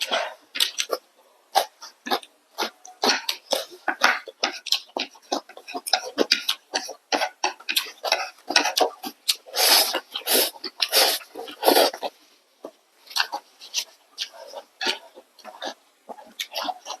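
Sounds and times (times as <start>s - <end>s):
wet chewing and smacking: 0.0s - 17.0s
noodle slurps: 8.1s - 12.2s.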